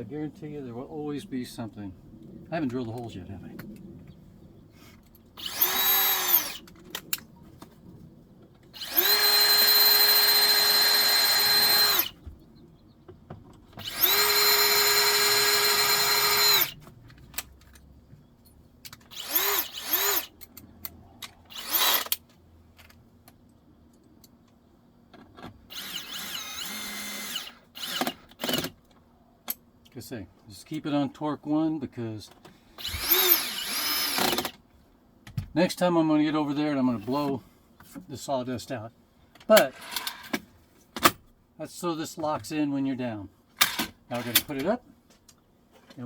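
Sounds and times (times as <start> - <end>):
cordless drill drilling into wood: 5.4 - 6.6, 8.8 - 12.2, 13.8 - 16.8, 19.1 - 20.4, 21.5 - 22.2, 25.7 - 28.7, 32.8 - 34.5.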